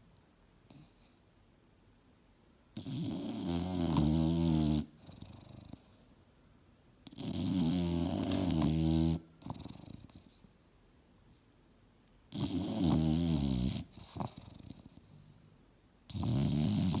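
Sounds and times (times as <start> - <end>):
dog snoring: 0.7 - 1.2, 2.7 - 6.1, 7.0 - 10.6, 12.3 - 15.4, 16.0 - 17.0.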